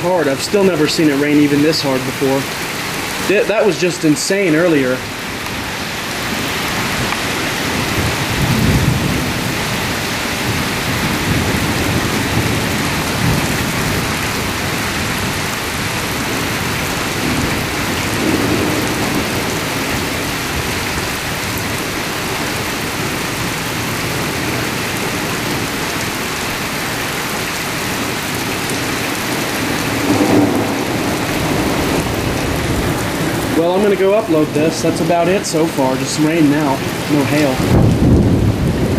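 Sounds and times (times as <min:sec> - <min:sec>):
heavy rain pouring: 0:00.0 - 0:38.9
low rumbles of thunder: 0:06.2 - 0:26.1, 0:27.9 - 0:35.8, 0:36.7 - 0:38.9.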